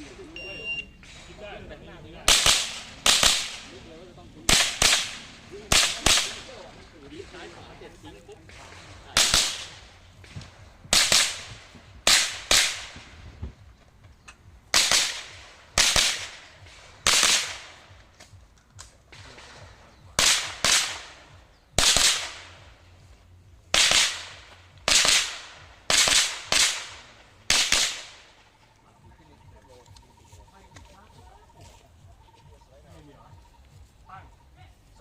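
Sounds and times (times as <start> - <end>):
rifle shots with echo: 1.0 - 13.3, 14.6 - 18.2, 19.1 - 23.0, 23.7 - 28.6.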